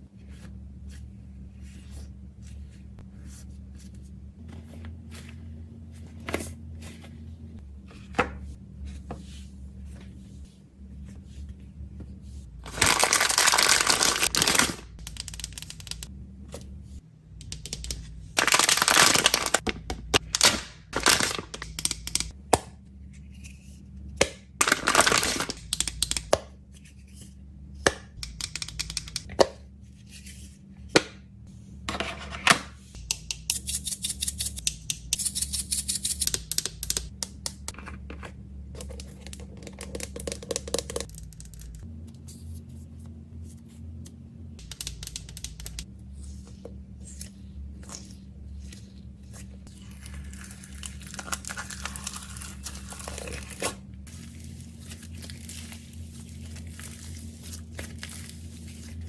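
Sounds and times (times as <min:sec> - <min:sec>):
plastic packaging tearing and crinkling: 0:12.6 - 0:16.1, 0:18.4 - 0:22.1, 0:24.6 - 0:25.6, 0:49.8 - 0:59.0.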